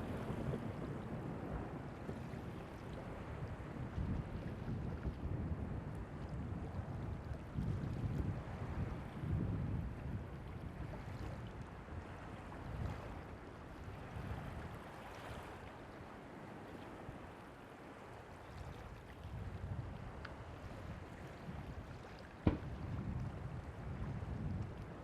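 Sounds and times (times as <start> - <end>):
surf on beach: 0.0 - 6.1, 22.3 - 23.2
wind buffeting microphone: 0.0 - 25.0.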